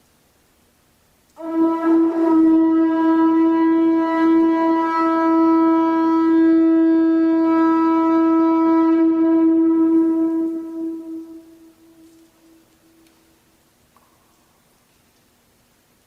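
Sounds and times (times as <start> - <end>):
conch shell trumpet note: 1.4 - 13.4.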